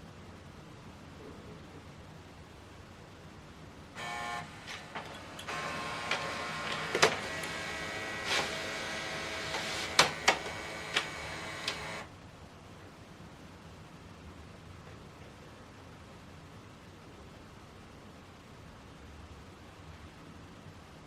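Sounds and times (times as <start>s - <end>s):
document feeder clicks and clunks: 4.0s - 12.1s
scanner motor whining: 4.0s - 12.1s.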